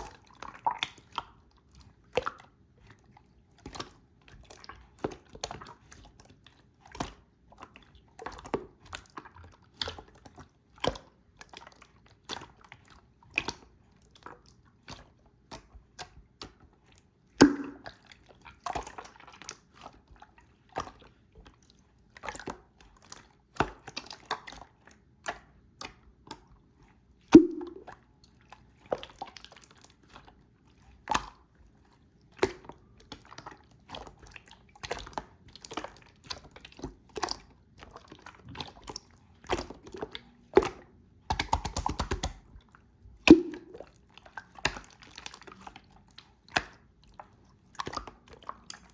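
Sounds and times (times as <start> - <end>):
slime squelching and popping: 0.0 - 48.9
slime plops: 17.3 - 18.1, 27.2 - 28.0, 32.3 - 42.5, 43.2 - 45.8.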